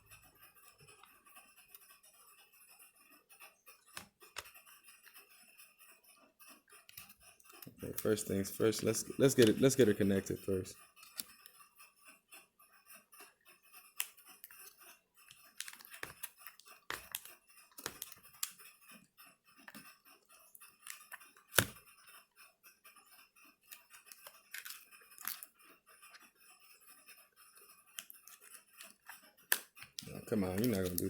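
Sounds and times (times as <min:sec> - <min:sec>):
clicks and taps inside laptop: 0:21.5 - 0:21.8.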